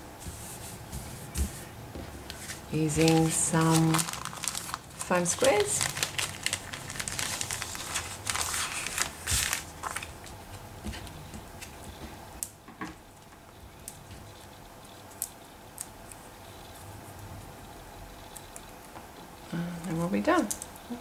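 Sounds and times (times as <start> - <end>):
paper crinkling and crackling: 2.3 - 12.1.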